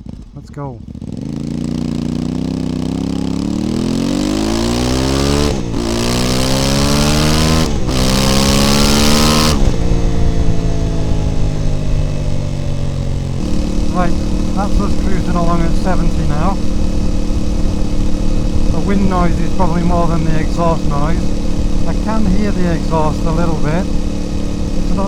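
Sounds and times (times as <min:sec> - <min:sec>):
motorcycle engine accelerating: 0:00.0 - 0:25.0
wind rushing over microphone: 0:09.4 - 0:25.0.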